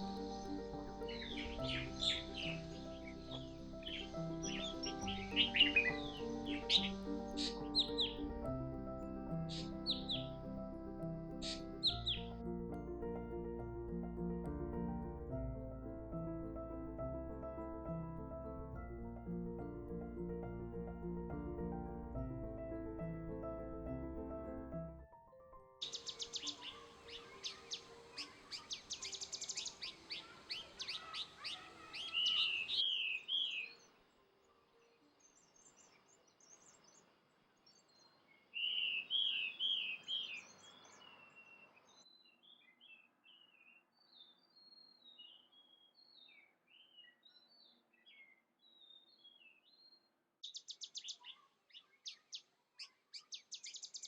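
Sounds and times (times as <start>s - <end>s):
birds chirping: 0.0s - 12.4s, 25.8s - 34.0s.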